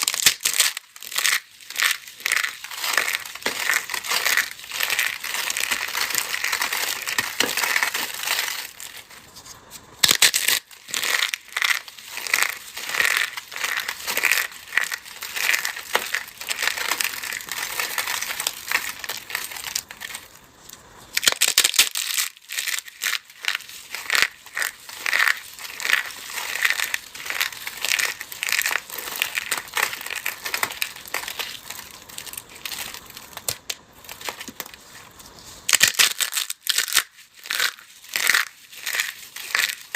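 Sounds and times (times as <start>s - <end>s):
dry block crushed by hand: 0.0s - 9.2s, 10.0s - 20.4s, 21.1s - 39.9s.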